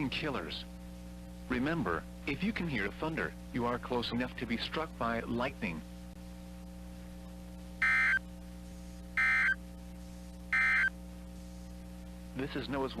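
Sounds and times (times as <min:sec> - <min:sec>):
steady low hum: 0:00.0 - 0:13.0
buzzy digital data bursts: 0:07.8 - 0:08.2, 0:09.2 - 0:09.6, 0:10.5 - 0:10.9.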